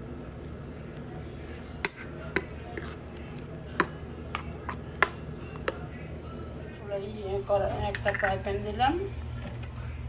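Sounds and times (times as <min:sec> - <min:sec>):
low background hum: 0:00.0 - 0:10.0
kitchenware clinking: 0:07.8 - 0:08.6.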